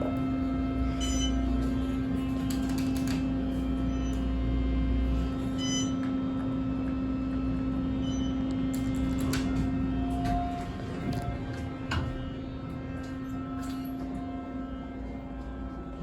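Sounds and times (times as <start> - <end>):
elevator hum: 0.0 - 16.0
elevator low rumble: 0.0 - 16.0.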